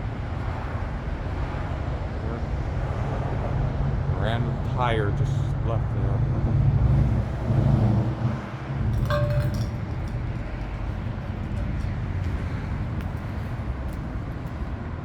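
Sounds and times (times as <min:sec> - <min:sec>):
low outdoor rumble: 0:03.1 - 0:15.0
short ringing clink: 0:09.0 - 0:10.2.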